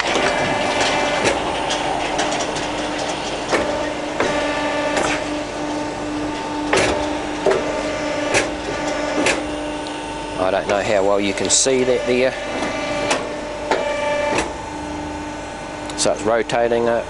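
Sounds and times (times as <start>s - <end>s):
sharp machine clunks: 0.0s - 5.8s, 6.4s - 9.6s, 10.4s - 14.6s
machine hum: 0.0s - 17.0s.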